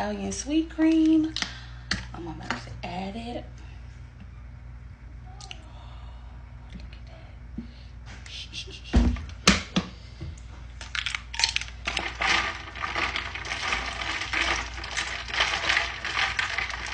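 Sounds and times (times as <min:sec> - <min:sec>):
ice cubes clinking in a cup: 0:10.8 - 0:16.9.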